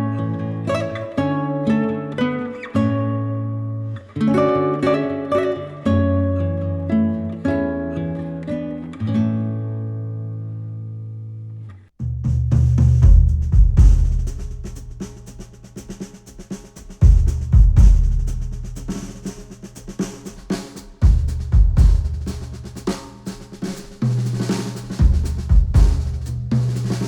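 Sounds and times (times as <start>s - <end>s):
drum kit playing: 12.0s - 27.0s.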